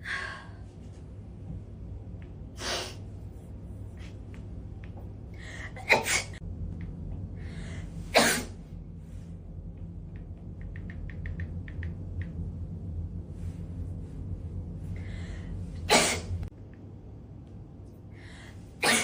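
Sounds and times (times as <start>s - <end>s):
low steady hum: 0.0s - 19.0s
sneezes: 5.8s - 6.4s, 8.1s - 8.6s, 15.9s - 16.4s, 18.8s - 19.0s.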